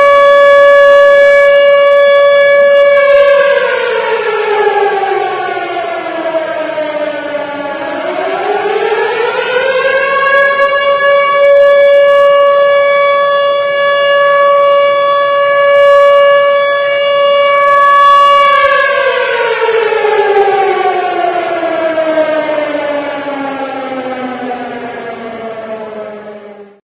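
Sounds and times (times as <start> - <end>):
civil defense siren wailing: 0.0 - 26.8.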